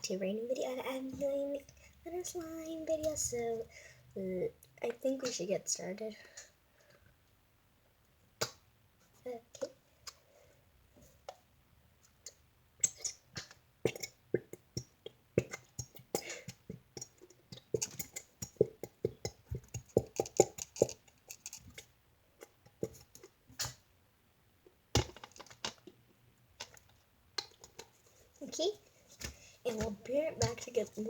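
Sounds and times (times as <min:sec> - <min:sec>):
clicks and taps of supplies handled: 0:14.8 - 0:23.8, 0:25.0 - 0:26.0, 0:26.6 - 0:28.0.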